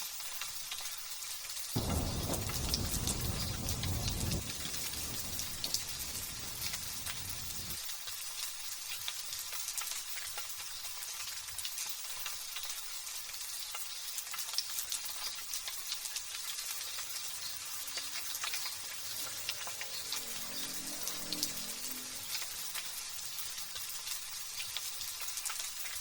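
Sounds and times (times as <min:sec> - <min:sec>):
low thunder rumbling: 0:01.8 - 0:07.8.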